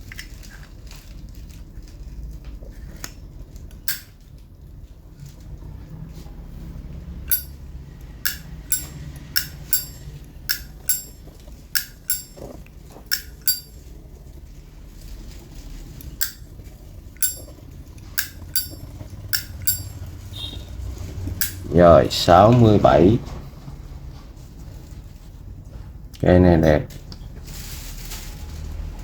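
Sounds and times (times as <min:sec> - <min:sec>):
lighter lid clicking open and shut: 0:13.1 - 0:13.7.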